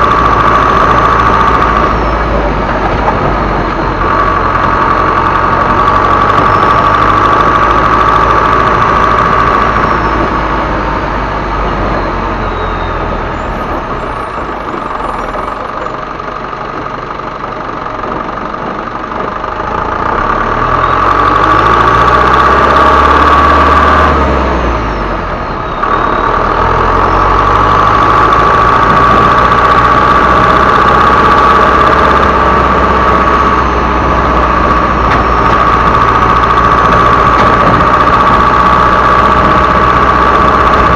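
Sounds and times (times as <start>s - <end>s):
diesel truck engine revving: 0.0s - 40.9s
high-pitched turbo whistle: 12.0s - 15.3s.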